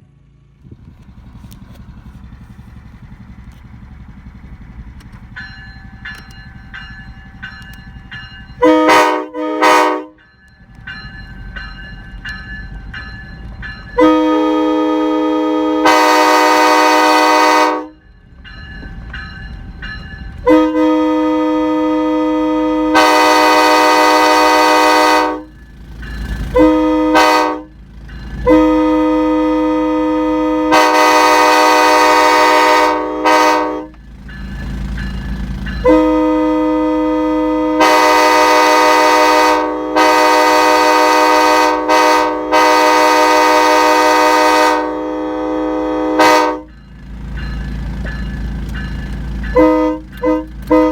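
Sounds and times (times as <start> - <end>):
multi-chime air horn blasts: 8.6 - 10.2, 14.0 - 18.0, 20.4 - 25.5, 26.6 - 27.7, 28.4 - 33.9, 35.8 - 46.7, 49.5 - 50.9.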